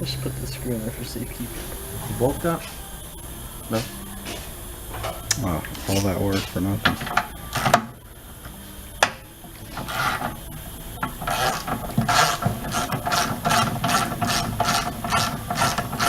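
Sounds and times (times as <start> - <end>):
hand ratchet clicking: 9.0 - 10.4, 11.0 - 16.0.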